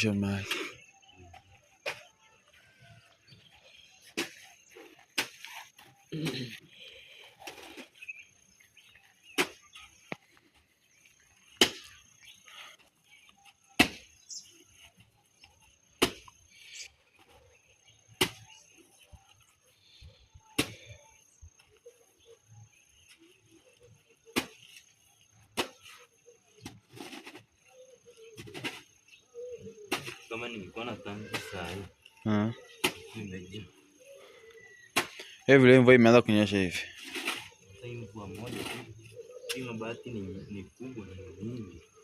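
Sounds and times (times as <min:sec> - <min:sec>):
insect trill: 0:00.0 - 0:42.0.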